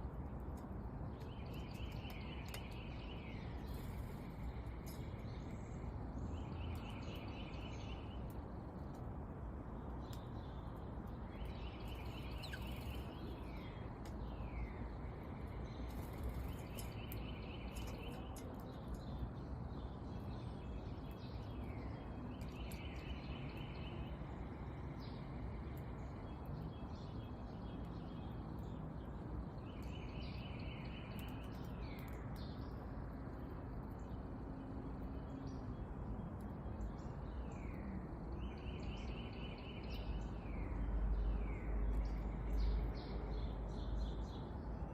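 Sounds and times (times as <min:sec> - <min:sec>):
songbird trill: 0:00.0 - 0:09.1, 0:09.7 - 0:44.9
low background noise: 0:00.0 - 0:44.9.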